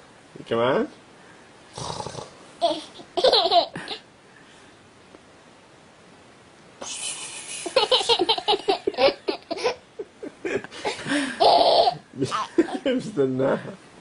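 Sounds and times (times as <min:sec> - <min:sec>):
person laughing: 0:06.9 - 0:12.9
breathy rush of air: 0:10.7 - 0:11.4.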